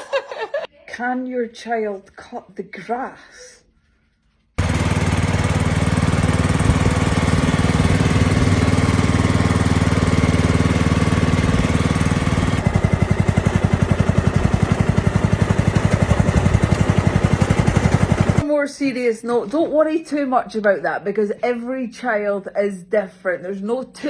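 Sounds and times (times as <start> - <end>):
lawn mower engine running: 4.6 - 18.4.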